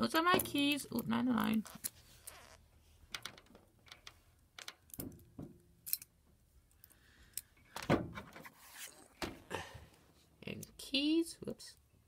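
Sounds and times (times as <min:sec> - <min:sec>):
keys clinking: 0:05.8 - 0:06.1.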